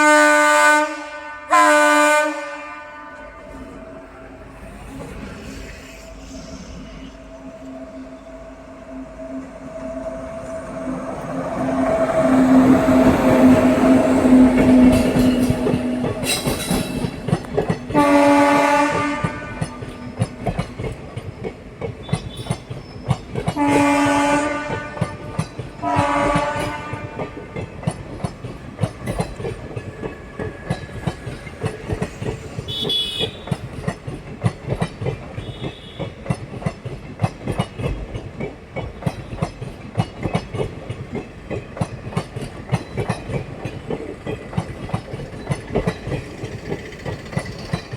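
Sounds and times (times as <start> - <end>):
train air horn blasts: 0.0 - 3.6, 17.9 - 20.1, 23.6 - 27.5, 32.6 - 33.6, 35.4 - 36.2
train wheels clacking over rail joints: 11.2 - 47.9.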